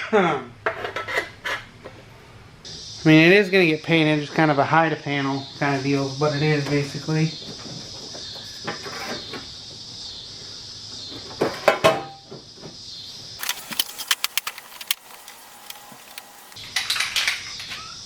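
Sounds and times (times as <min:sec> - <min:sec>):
crickets chirping: 0:12.8 - 0:16.6
metallic clicks of parts handled: 0:13.4 - 0:16.6.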